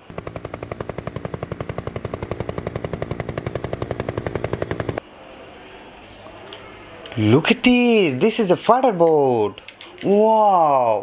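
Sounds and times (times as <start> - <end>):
steady buzzing tone: 0.0 - 6.0.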